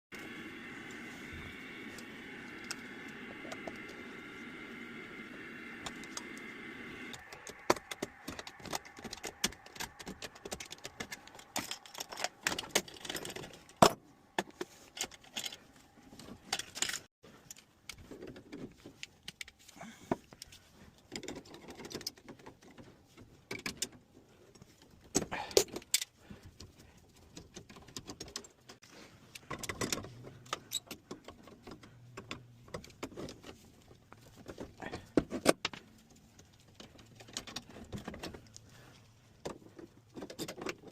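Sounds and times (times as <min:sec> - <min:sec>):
steady hum: 0:00.1 - 0:17.0.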